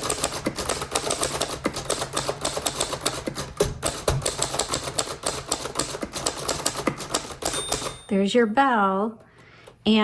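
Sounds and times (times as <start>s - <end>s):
typewriter keystroke clacks: 0.0s - 8.0s.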